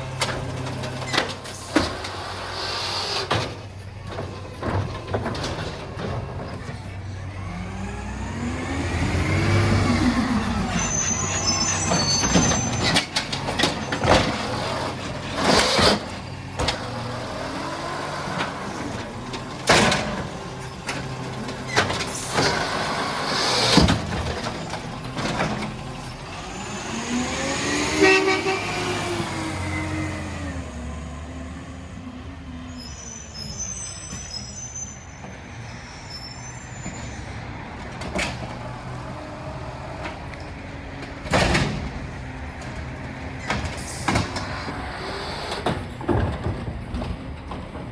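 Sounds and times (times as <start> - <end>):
garbage truck engine revving: 0.0 - 33.0, 37.6 - 47.9
high-pitched squeals: 9.0 - 14.0, 26.0 - 30.4, 32.5 - 37.5.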